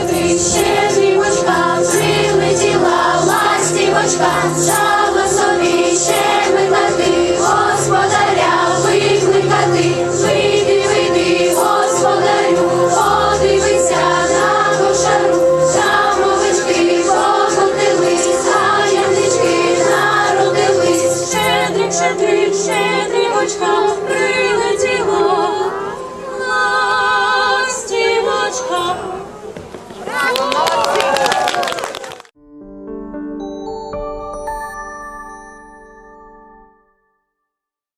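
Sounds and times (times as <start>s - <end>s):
steady held notes: 0.0s - 29.5s
choir singing: 0.0s - 29.6s.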